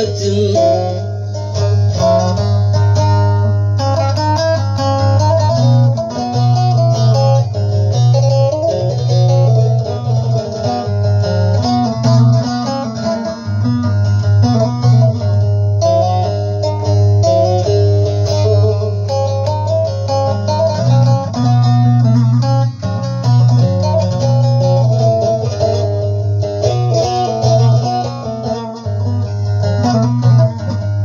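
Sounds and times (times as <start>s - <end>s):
person singing: 0.0s - 3.2s
plucked lute melody: 0.0s - 31.0s.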